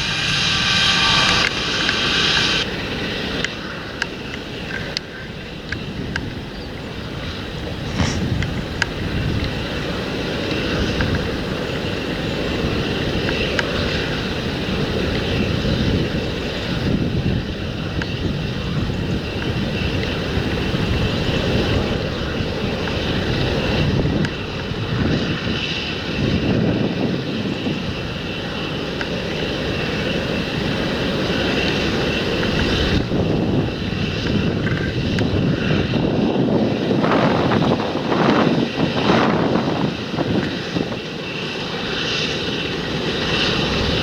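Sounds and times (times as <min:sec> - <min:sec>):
tractor running: 0:00.0 - 0:03.2.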